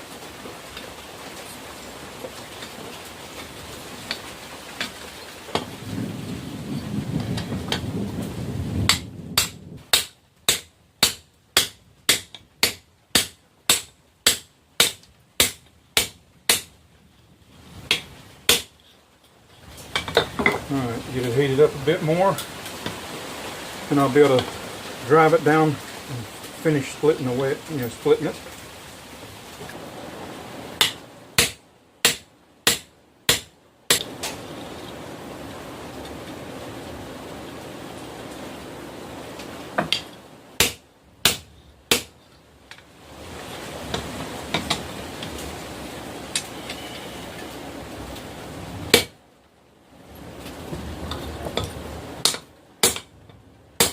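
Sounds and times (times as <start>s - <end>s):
steady hiss: 0.0s - 53.9s
low rumbling noise: 5.6s - 9.9s
hammer striking steel on anvil: 30.8s - 34.1s.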